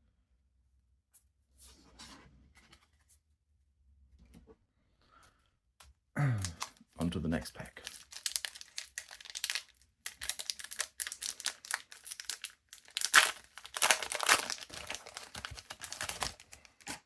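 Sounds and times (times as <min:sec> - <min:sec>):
foil wrapper crinkling: 0:07.6 - 0:17.0
foil wrapper tearing: 0:07.8 - 0:17.0.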